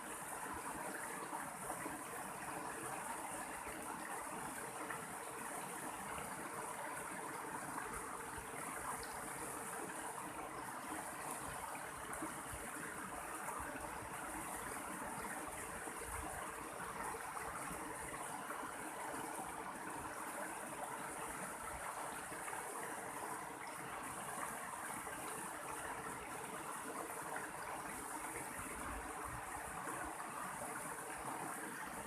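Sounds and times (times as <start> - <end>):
stream water rushing: 0.0 - 32.0.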